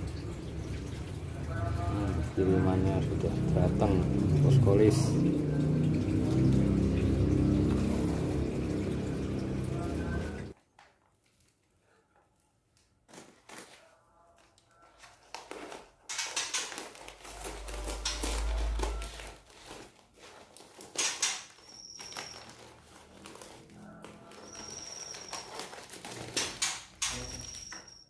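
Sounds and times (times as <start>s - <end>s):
crinkling and rustling: 10.5s - 28.0s.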